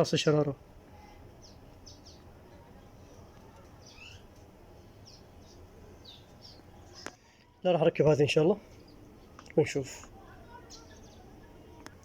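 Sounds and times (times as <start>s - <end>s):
small bird chirping: 1.0s - 2.4s, 3.0s - 7.5s, 8.6s - 11.4s.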